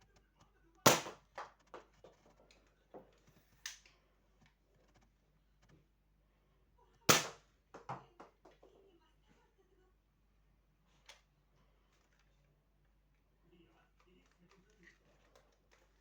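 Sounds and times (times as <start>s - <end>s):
toy gun shots: 0.8s - 1.8s, 7.1s - 7.5s.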